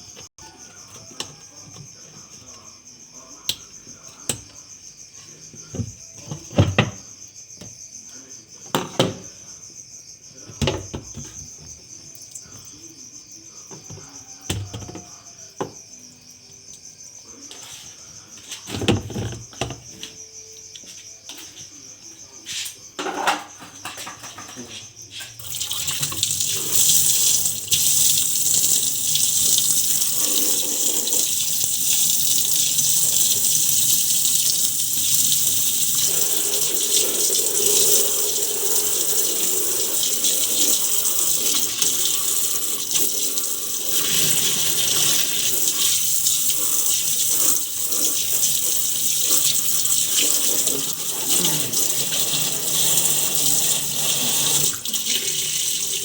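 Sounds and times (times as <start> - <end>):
water running from a tap: 25.4 - 56.0.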